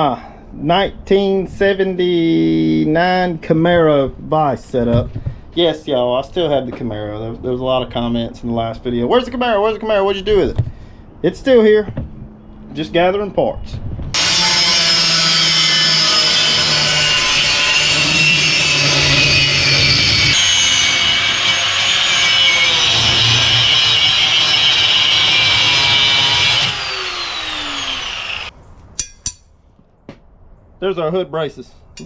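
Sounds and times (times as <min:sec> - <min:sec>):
rotary power tool cutting steel: 0:14.2 - 0:28.5.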